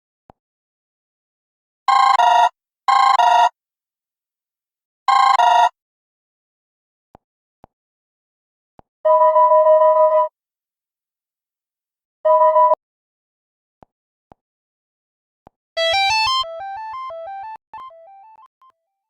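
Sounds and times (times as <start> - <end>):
two-tone ringtone: 1.9 - 3.5, 5.1 - 5.7, 15.8 - 18.8.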